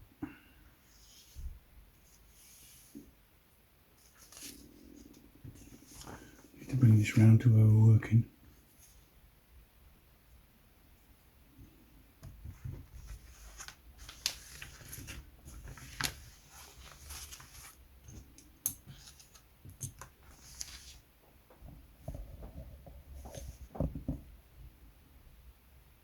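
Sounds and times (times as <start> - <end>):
tools and small parts handled: 18.0 - 20.3
soft knocks: 21.5 - 24.3.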